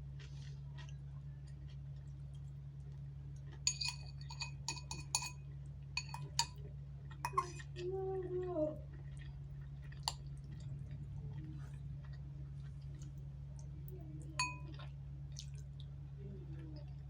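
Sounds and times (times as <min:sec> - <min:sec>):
steady low hum: 0:00.0 - 0:17.0
utensils clinking against a dish: 0:03.6 - 0:05.4, 0:06.0 - 0:06.6, 0:07.2 - 0:07.7, 0:14.4 - 0:14.8.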